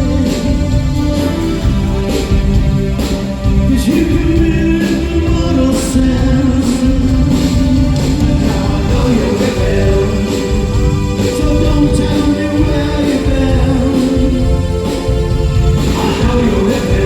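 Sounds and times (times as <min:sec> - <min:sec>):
live rock band playing: 0:00.0 - 0:17.0
lead voice singing: 0:03.4 - 0:17.0.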